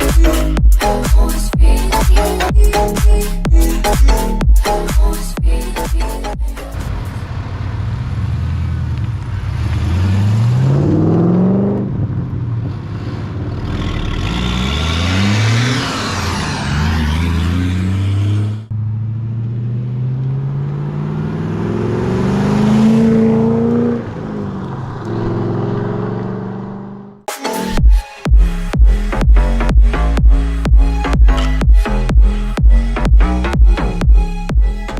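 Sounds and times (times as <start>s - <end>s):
car engine revving: 0.0s - 27.3s.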